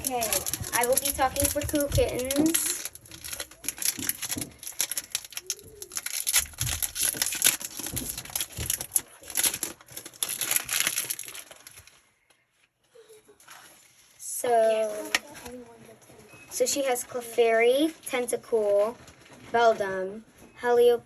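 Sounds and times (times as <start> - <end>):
foil wrapper crinkling: 0.0 - 12.2.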